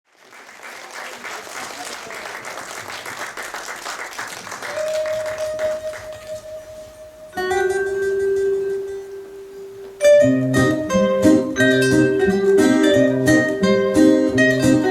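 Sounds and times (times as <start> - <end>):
applause: 0.0 - 6.4
instrumental introduction: 4.7 - 14.9
bass line: 10.0 - 14.9.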